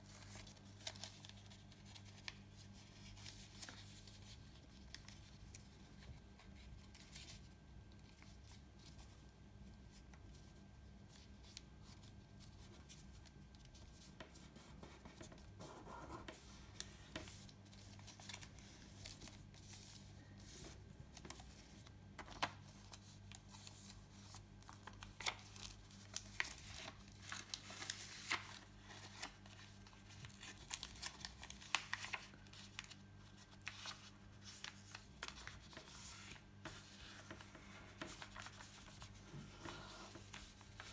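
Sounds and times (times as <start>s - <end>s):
paper folding and crackling: 0.0s - 9.2s, 9.9s - 40.9s.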